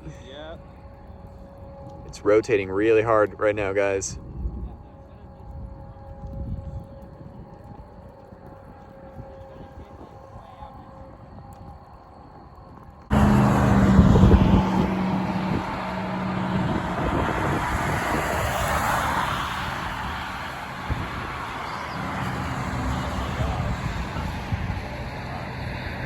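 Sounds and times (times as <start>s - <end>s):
wind and road noise: 0.0s - 26.0s
low engine hum: 13.1s - 26.0s.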